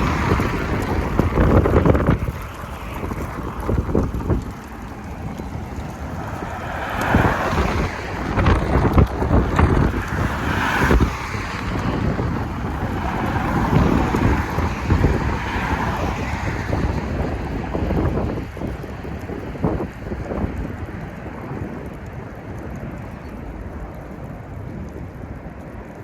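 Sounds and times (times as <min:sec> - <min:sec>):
gusty wind buffeting microphone: 0:00.0 - 0:26.0.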